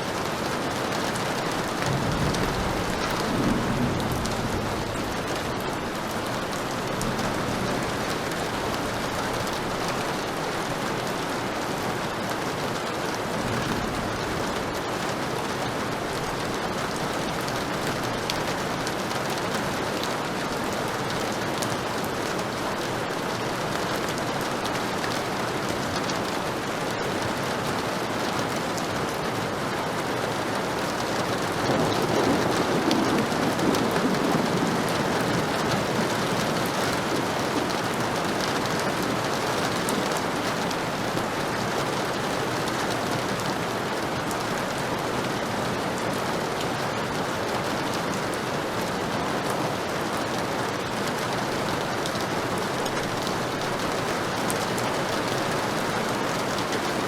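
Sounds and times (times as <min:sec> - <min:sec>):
heavy rain: 0:00.0 - 0:57.0
thunder rumble: 0:01.8 - 0:09.6, 0:31.4 - 0:40.8.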